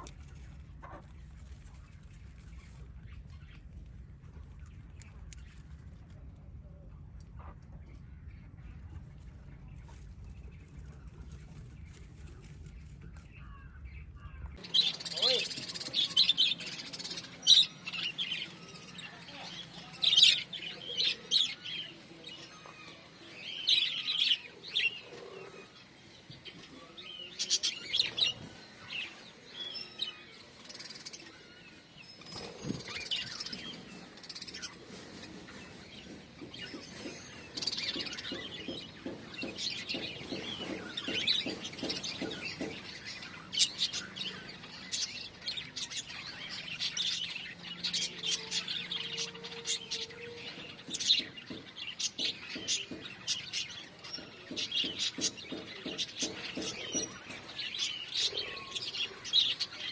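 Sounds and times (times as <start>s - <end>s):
birds chirping: 0.0s - 59.9s.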